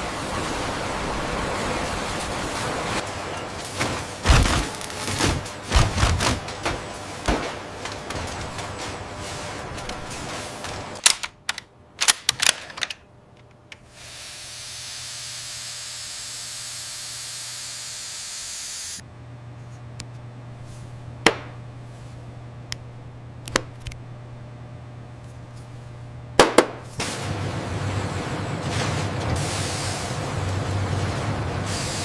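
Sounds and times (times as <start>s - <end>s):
low steady hum: 15.2s - 31.7s.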